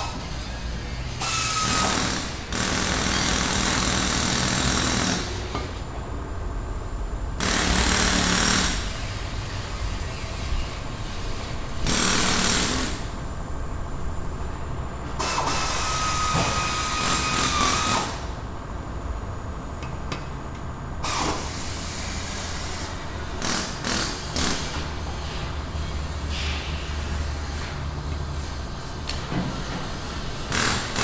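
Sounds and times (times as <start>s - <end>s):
tool whining: 15.2s - 18.3s.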